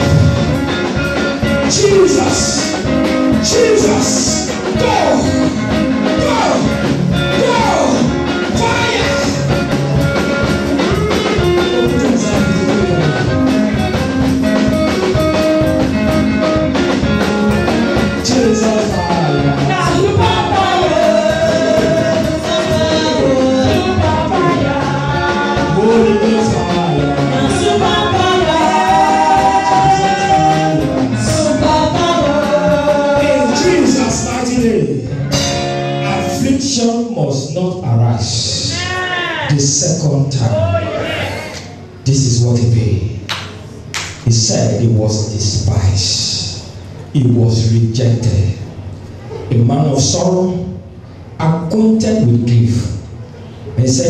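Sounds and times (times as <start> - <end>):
song with singing and guitars: 0.0 - 36.7.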